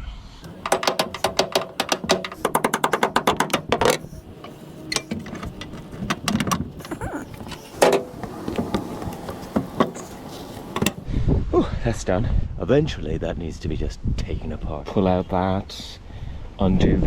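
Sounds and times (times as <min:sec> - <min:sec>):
knocks and handling noises: 0:00.4 - 0:11.1.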